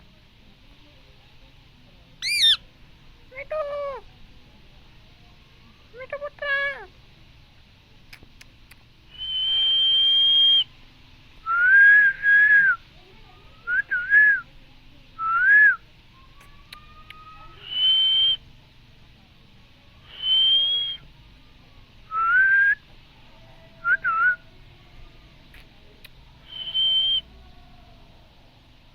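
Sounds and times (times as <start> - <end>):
parrot whistling: 2.2 - 2.6, 9.1 - 10.7, 16.7 - 18.4, 20.1 - 21.0, 26.5 - 27.2.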